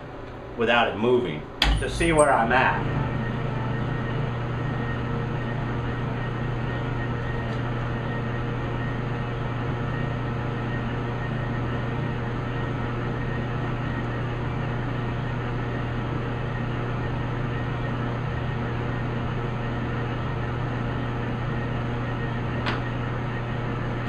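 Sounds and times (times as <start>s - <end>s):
sharp click: 1.6s - 2.2s
metal lathe humming: 1.6s - 9.8s.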